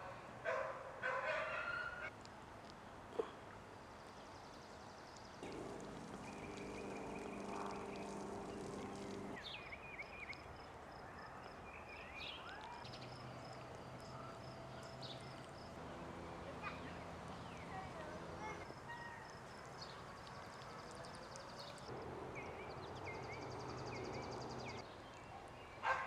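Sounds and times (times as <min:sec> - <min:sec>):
steady low hum: 0:05.4 - 0:09.4, 0:13.2 - 0:18.8, 0:21.8 - 0:24.8.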